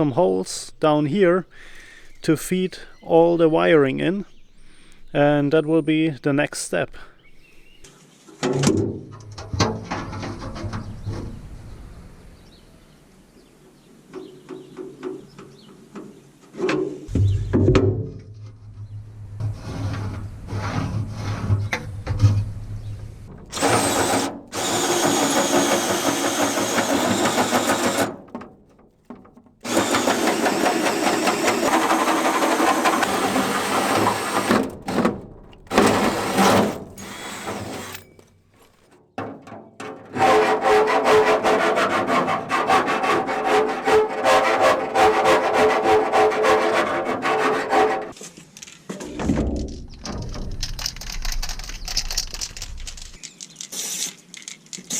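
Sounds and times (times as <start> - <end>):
power drill boring holes: 23.4 - 28.4, 29.2 - 38.3.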